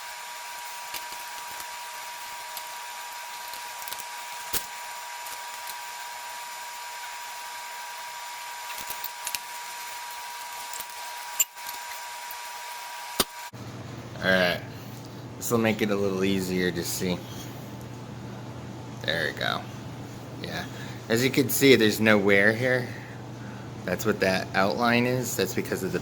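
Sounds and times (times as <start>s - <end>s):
hand tools clicking on metal: 10.6s - 11.9s.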